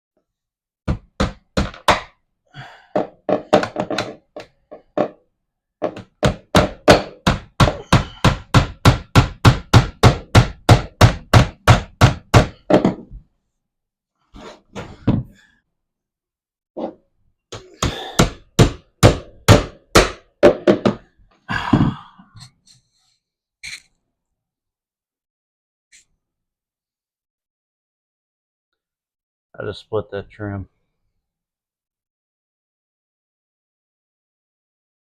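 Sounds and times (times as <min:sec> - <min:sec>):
hammer driving nails into wood: 0:00.9 - 0:02.2, 0:03.0 - 0:05.2, 0:05.8 - 0:13.1, 0:17.5 - 0:21.1.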